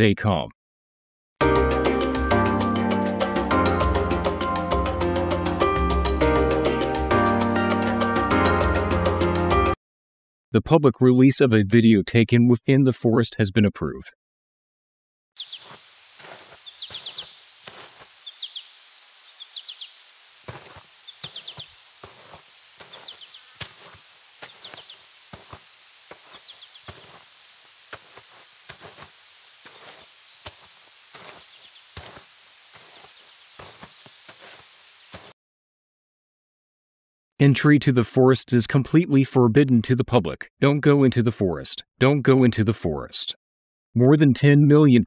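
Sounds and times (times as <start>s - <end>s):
bird chirps: 15.4s - 35.3s
high insect drone: 15.4s - 35.3s
sharp crackles and snaps: 15.4s - 35.3s.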